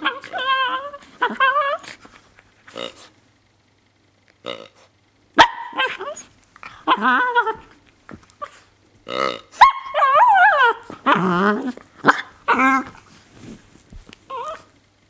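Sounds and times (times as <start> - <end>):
dog whining and growling: 0.0 - 2.1, 5.5 - 7.8, 9.4 - 13.6, 14.2 - 14.8
dog barking: 5.4 - 6.3, 9.6 - 10.8.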